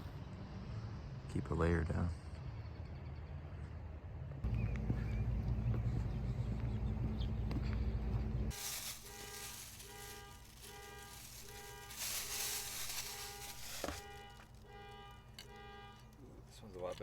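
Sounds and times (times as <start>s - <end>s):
rustling handling noise: 8.5s - 17.0s.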